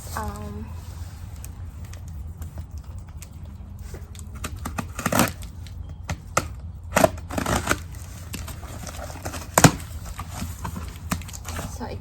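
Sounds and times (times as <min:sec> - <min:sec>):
cardboard box rustling and scraping: 0:06.9 - 0:12.0.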